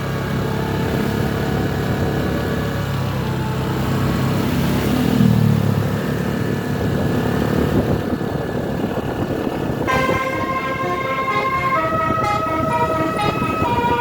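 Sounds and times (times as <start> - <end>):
road rumble: 0.0 - 14.0
multi-note horn: 9.9 - 14.0.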